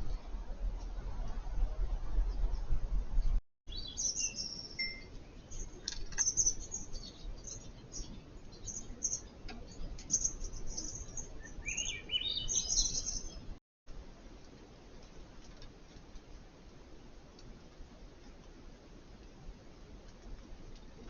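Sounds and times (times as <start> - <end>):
wild birds chirping: 2.1 - 13.6.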